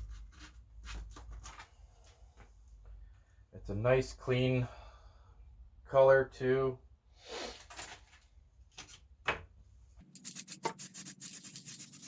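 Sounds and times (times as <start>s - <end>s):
rubbing and handling noises: 10.0s - 12.0s
spray paint hissing spurts: 10.2s - 12.0s.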